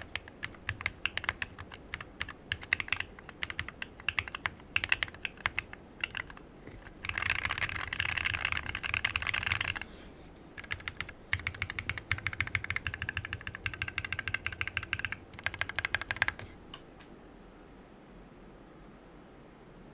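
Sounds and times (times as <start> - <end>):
mechanical keyboard typing: 0.0 - 9.9, 10.6 - 16.5.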